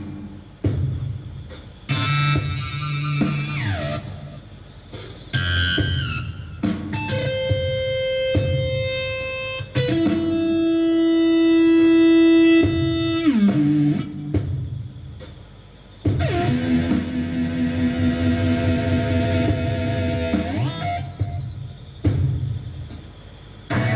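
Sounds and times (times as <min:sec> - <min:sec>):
electric guitar held notes: 0:16.2 - 0:21.5, 0:23.7 - 0:23.9.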